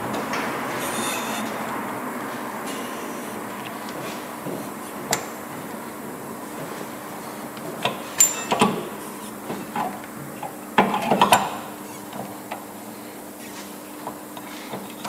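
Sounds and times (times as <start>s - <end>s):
sharp metallic clink: 8.2s - 8.6s
metal tools clanking on metal: 8.2s - 8.8s.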